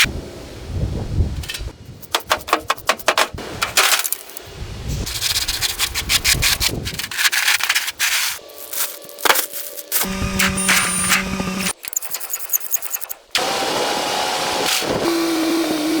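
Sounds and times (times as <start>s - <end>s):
sanding rusty car body: 2.1s - 3.3s, 5.1s - 9.5s
sharp clicks: 10.0s - 13.4s.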